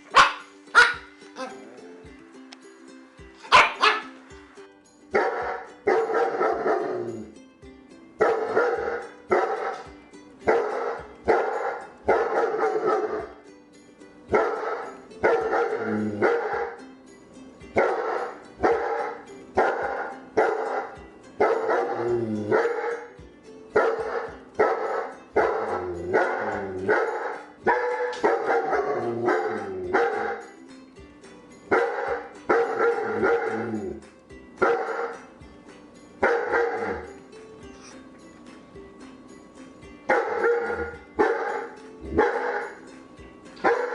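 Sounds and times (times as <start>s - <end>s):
background music: 0.0s - 43.9s
dog barking loudly: 0.1s - 1.1s, 3.5s - 4.2s, 5.2s - 7.0s, 8.2s - 13.3s, 14.3s - 16.8s, 17.8s - 23.1s, 23.8s - 30.4s, 31.7s - 33.7s, 34.6s - 35.2s, 36.2s - 37.1s, 40.1s - 42.8s, 43.6s - 43.9s.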